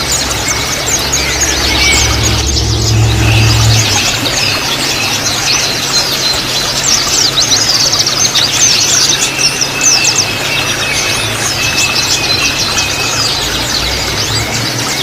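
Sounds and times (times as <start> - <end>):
thin high tone: 0.0 - 5.9
low hum: 0.0 - 6.1
birds twittering: 0.0 - 15.0.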